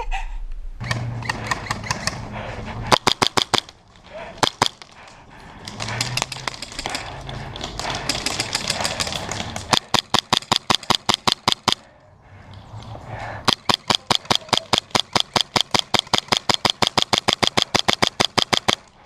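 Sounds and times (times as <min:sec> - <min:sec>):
airsoft gun shots: 0:02.9 - 0:03.8, 0:13.4 - 0:18.8.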